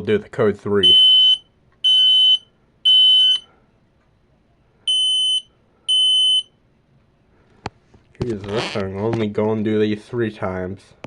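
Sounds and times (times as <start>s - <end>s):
smoke alarm beeps: 0.8s - 3.5s, 4.9s - 6.5s.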